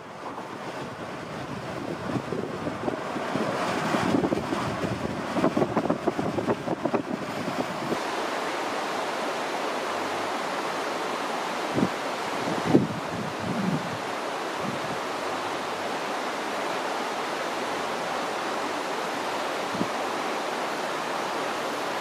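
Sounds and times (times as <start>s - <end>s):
wind buffeting microphone: 0.0s - 8.0s, 11.7s - 15.0s.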